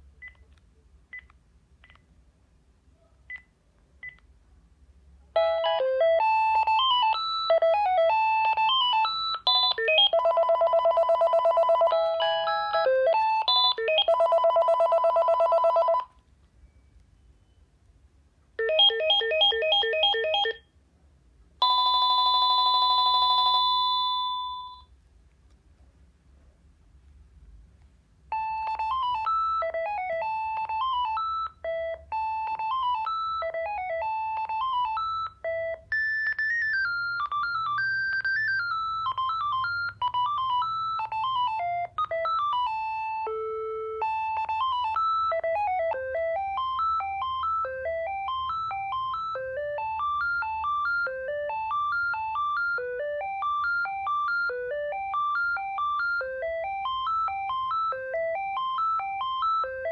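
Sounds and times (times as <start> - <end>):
electronic phone ringtone melody: 5.4 - 16.1, 18.6 - 20.7, 21.6 - 24.9, 28.3 - 59.9.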